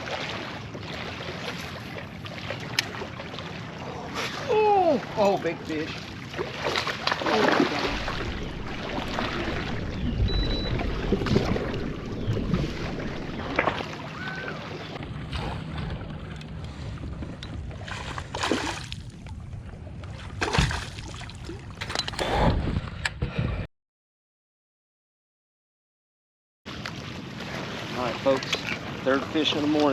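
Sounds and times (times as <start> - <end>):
water splashes: 0.0 - 22.0, 26.7 - 29.9
water washing against hull: 0.0 - 22.9, 26.7 - 29.9
wind on microphone: 7.8 - 23.6.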